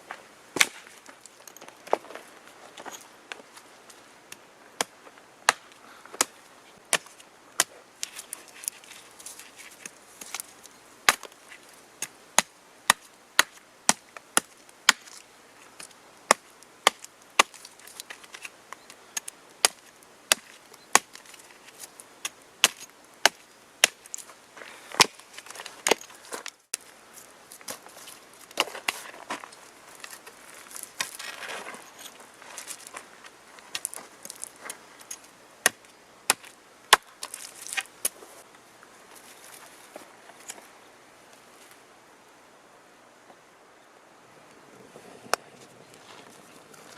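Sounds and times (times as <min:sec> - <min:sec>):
wood chopping: 0:00.6 - 0:01.0, 0:04.8 - 0:07.7, 0:11.1 - 0:11.4, 0:12.0 - 0:15.1, 0:16.3 - 0:18.4, 0:19.2 - 0:21.3, 0:22.2 - 0:24.2, 0:25.0 - 0:26.1, 0:35.6 - 0:38.2.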